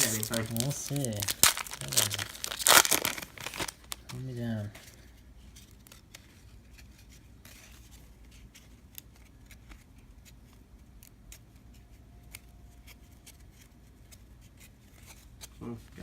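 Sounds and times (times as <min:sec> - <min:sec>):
trading cards flipping: 0:00.0 - 0:04.2
low room hum: 0:00.0 - 0:16.0.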